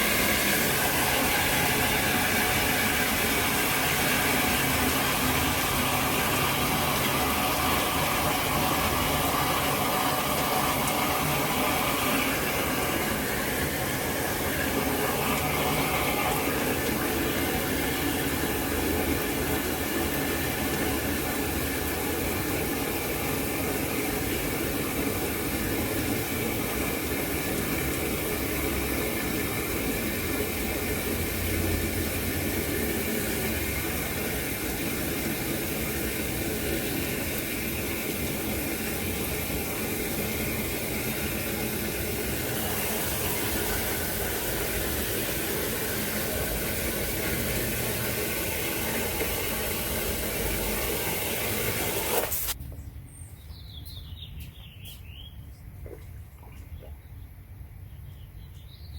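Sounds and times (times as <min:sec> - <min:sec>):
water running into a tank: 0:00.0 - 0:52.7, 0:55.6 - 0:57.8.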